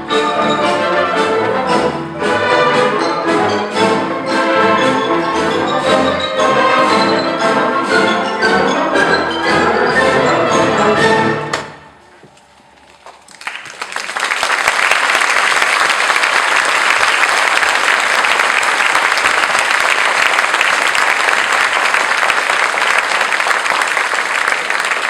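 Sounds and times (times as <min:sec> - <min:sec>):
crowd applauding: 0:13.1 - 0:25.0.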